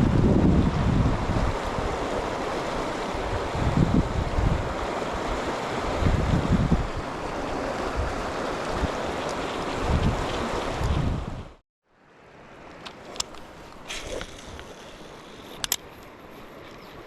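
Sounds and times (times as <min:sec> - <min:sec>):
wind buffeting microphone: 0:00.0 - 0:11.6
river water rushing: 0:00.2 - 0:10.9.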